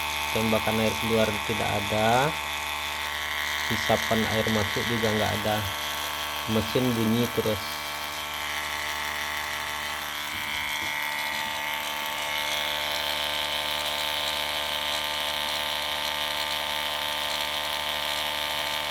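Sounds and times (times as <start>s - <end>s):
water pump motor whirring: 0.0s - 18.9s.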